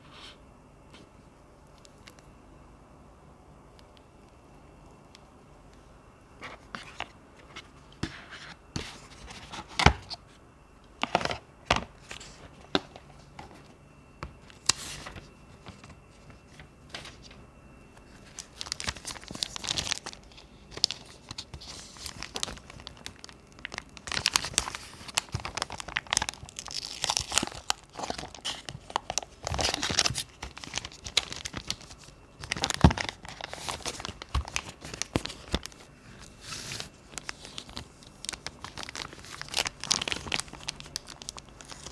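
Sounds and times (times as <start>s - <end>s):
packaging crinkling and tearing: 18.2s - 41.9s.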